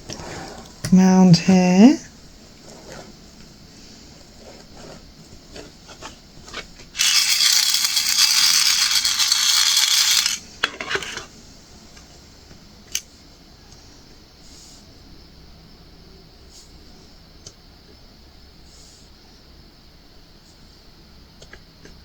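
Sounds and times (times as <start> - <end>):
plastic beads rattling in a tray: 7.0 - 11.2.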